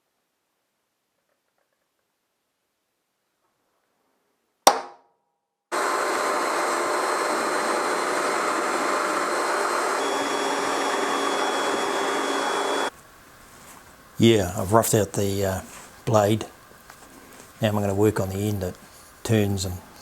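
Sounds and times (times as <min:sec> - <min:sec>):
power tool whining on steel: 0:05.7 - 0:12.9.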